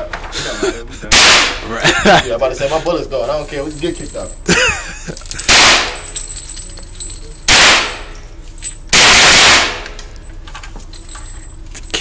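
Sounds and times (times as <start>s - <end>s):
rifle gunfire: 1.1s - 1.6s, 5.5s - 6.1s, 7.5s - 8.2s, 8.9s - 10.0s.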